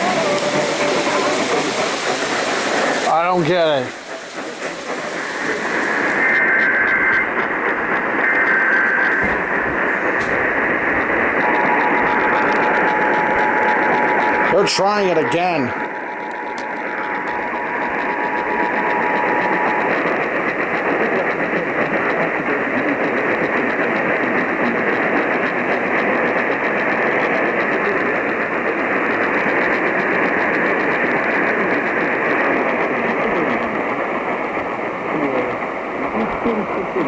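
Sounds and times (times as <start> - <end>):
radio static hiss: 0.0 - 37.0
faint two-tone attention signal: 8.2 - 21.2.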